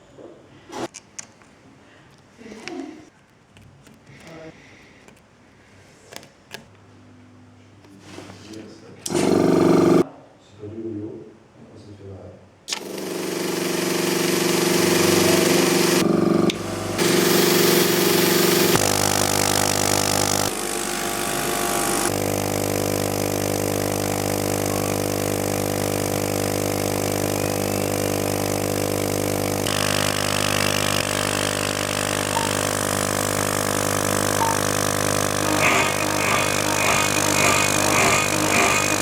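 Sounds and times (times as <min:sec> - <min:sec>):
cnc machine motor hum: 0:09.1 - 0:10.0, 0:12.8 - 0:26.0, 0:27.1 - 0:39.0.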